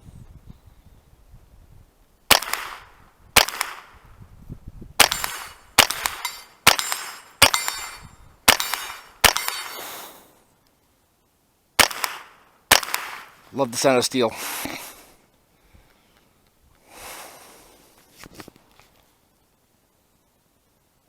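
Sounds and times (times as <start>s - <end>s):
rifle shots cracking: 2.3s - 4.0s, 5.0s - 10.1s, 11.8s - 13.5s
steel target ringing: 5.0s - 9.9s.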